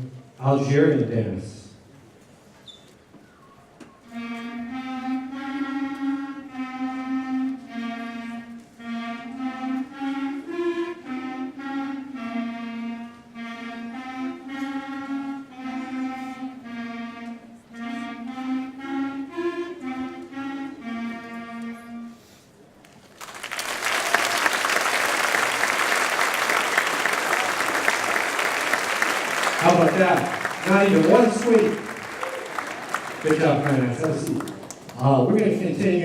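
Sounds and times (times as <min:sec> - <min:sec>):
clarinets playing: 0:04.0 - 0:22.3, 0:23.8 - 0:36.0.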